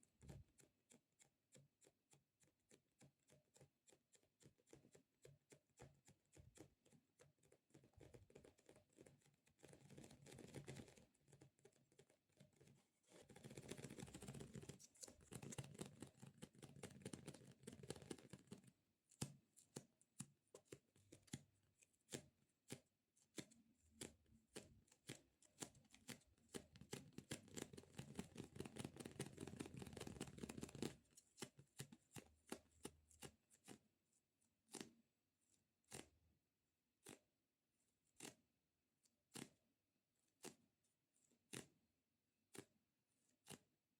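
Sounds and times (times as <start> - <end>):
fingers tapping squishy toys: 13.2 - 33.8.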